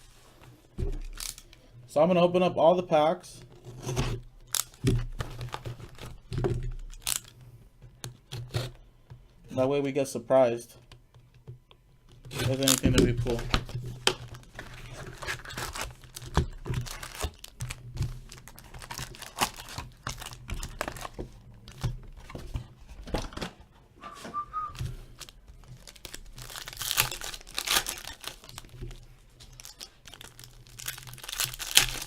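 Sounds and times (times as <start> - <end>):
wrappers tearing and crinkling: 1.0 - 1.5, 4.5 - 6.2, 6.8 - 7.3, 12.3 - 22.4, 24.7 - 32.0.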